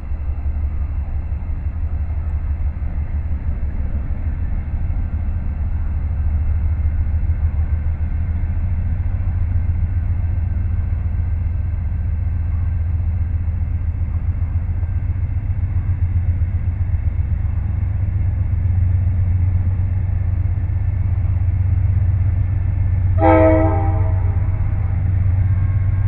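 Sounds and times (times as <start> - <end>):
diesel locomotives rumbling: 0.0 - 26.0
train air horn blast: 23.2 - 25.0.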